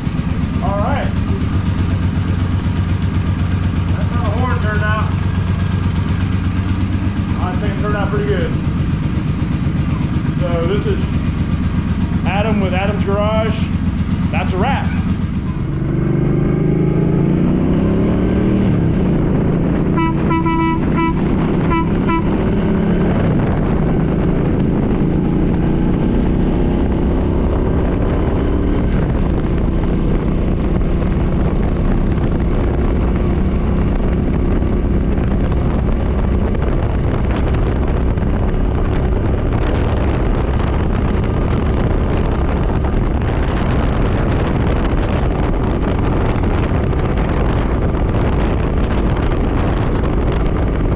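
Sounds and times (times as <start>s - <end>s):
motorcycle engine running: 0.0s - 50.9s
air horn blasts: 19.9s - 22.6s.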